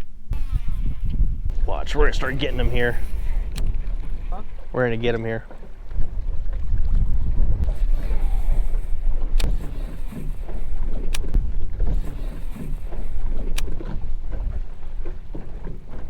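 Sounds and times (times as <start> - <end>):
wind buffeting microphone: 0.0 - 16.0
sharp clicks: 9.3 - 11.4, 12.2 - 13.8.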